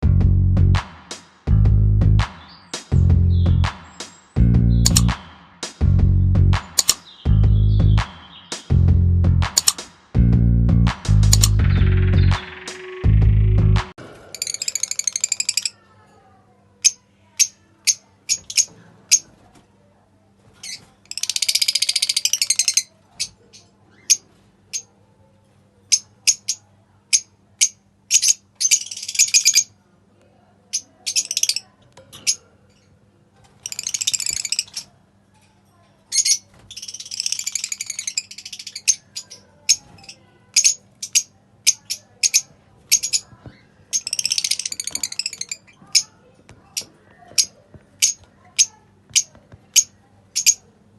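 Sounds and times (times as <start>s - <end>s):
lovebirds chirping: 2.4s - 5.2s, 6.6s - 8.8s, 11.1s - 15.7s, 36.1s - 46.1s.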